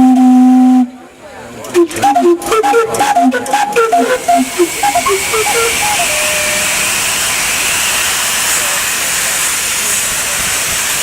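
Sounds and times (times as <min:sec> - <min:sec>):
steam whistle playing notes: 0:01.8 - 0:07.8
steam hissing: 0:04.5 - 0:11.0.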